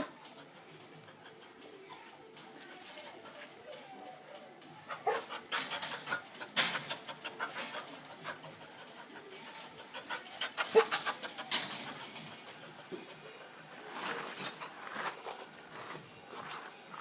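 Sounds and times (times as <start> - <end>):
dog panting: 0.2 - 1.8, 4.9 - 15.6.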